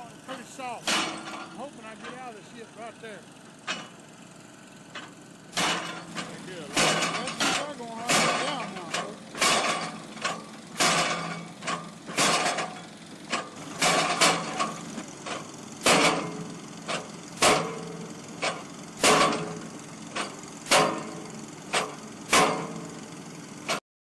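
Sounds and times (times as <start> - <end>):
engine running: 0.0 - 23.8
heavy ringing knocks: 0.8 - 2.3, 5.0 - 23.0.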